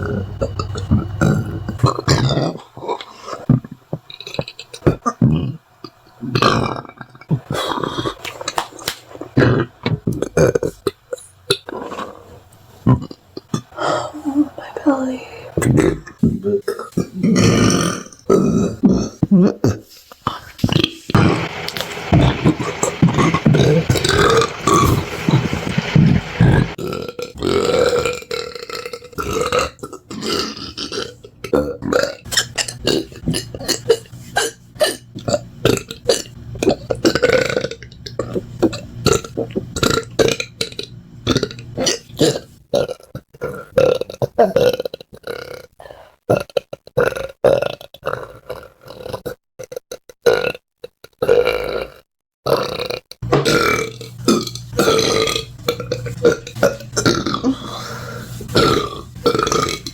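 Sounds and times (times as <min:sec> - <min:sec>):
person burping: 0:00.0 - 0:02.6, 0:15.6 - 0:19.8, 0:21.2 - 0:45.6, 0:46.3 - 0:59.9.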